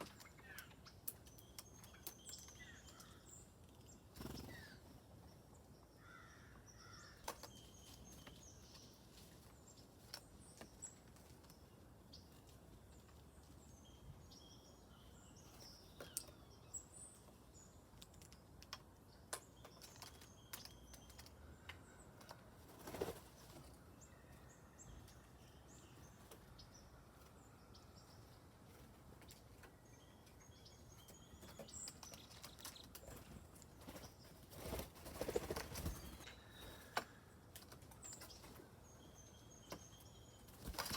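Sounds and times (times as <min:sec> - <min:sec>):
songbirds chirping: 0:00.0 - 0:40.9
wings fluttering: 0:04.2 - 0:04.8, 0:22.2 - 0:23.8, 0:31.9 - 0:38.6, 0:40.5 - 0:40.9.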